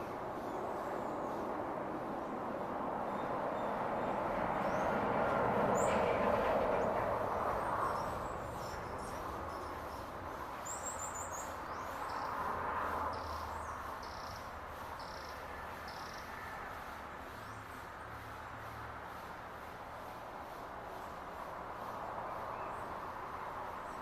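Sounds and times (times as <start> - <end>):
small birds chirping: 5.7 - 16.3.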